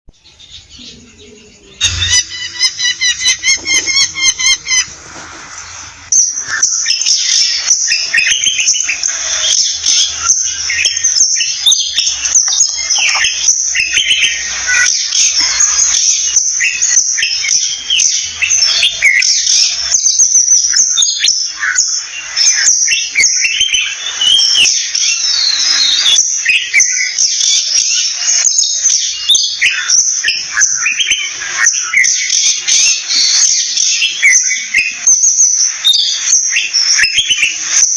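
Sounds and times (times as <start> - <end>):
magpie calls: 1.0 - 5.0.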